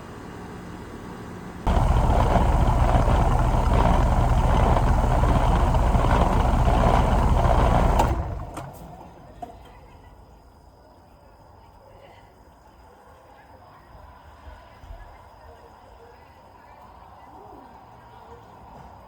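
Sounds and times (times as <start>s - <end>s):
heat pump humming: 0.0s - 8.9s.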